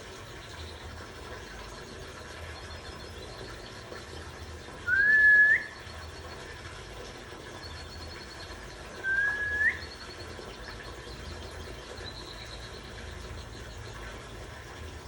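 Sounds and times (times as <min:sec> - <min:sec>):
songbird whistled notes: 0:04.8 - 0:05.9, 0:08.9 - 0:10.2
faint high twittering: 0:04.8 - 0:14.1.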